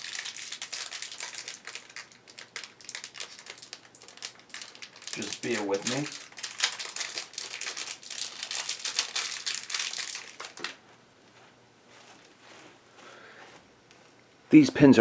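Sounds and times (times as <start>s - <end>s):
plastic packaging crinkling: 0.0s - 10.8s.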